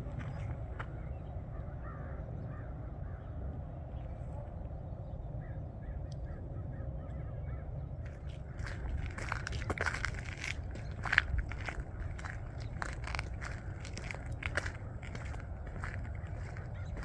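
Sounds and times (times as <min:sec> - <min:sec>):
steady low rumble: 0:00.0 - 0:17.0
distant birds harsh calls: 0:00.3 - 0:04.1, 0:05.0 - 0:09.6, 0:10.7 - 0:17.0.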